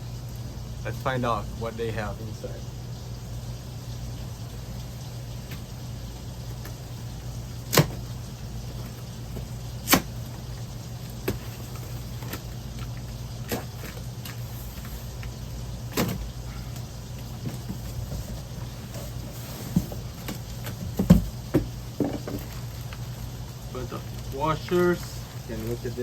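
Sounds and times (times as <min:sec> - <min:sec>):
steady low hum: 0:00.0 - 0:26.0
sharp knocks and bumps: 0:17.4 - 0:22.5.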